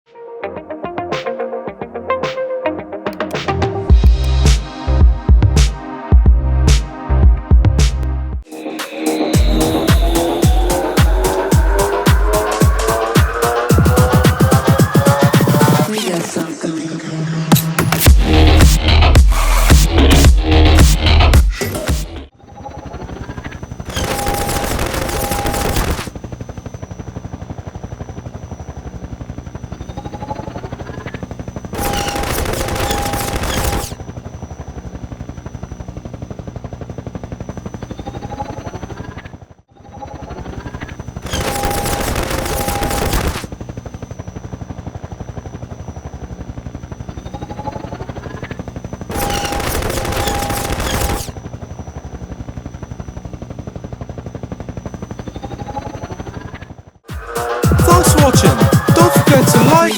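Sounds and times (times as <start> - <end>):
fast-pulsing mechanical drone: 8.5 - 16.6, 17.4 - 59.9
machine-gun fire: 23.9 - 26.1, 31.8 - 34.0, 41.2 - 43.5, 49.1 - 51.4.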